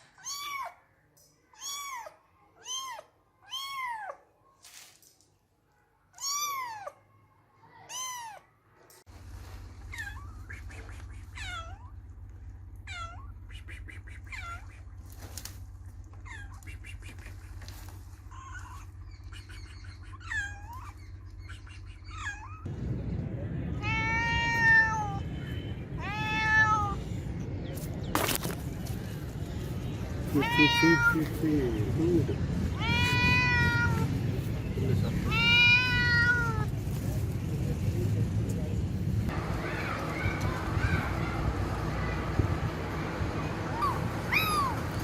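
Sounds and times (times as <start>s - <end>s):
cats meowing: 0.1s - 0.8s, 1.6s - 4.2s, 6.2s - 7.0s, 7.8s - 8.4s, 11.2s - 12.0s, 12.8s - 13.4s, 14.3s - 14.8s, 20.1s - 21.0s, 22.0s - 22.7s, 23.8s - 25.2s, 26.0s - 27.0s, 30.2s - 32.0s, 32.6s - 34.3s, 35.1s - 36.7s, 43.7s - 45.0s.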